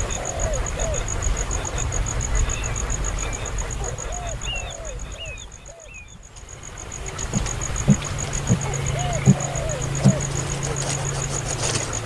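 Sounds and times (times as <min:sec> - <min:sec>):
insect trilling: 0:00.0 - 0:12.0
baby bird cheeping: 0:07.2 - 0:11.1.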